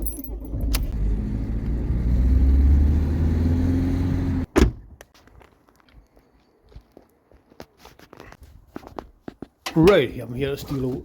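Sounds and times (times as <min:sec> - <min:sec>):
car engine running: 0:00.7 - 0:04.5.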